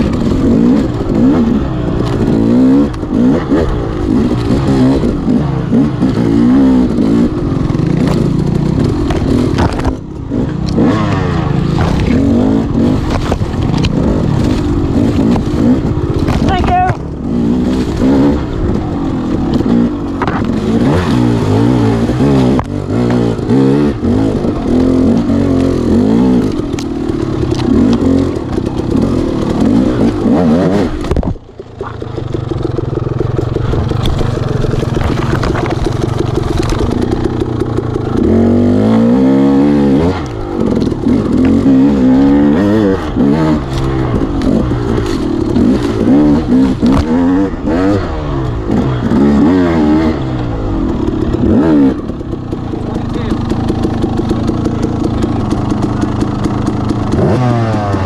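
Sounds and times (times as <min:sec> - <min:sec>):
motorcycle engine revving: 0:00.0 - 0:58.0
rattles and knocks: 0:30.9 - 0:38.6.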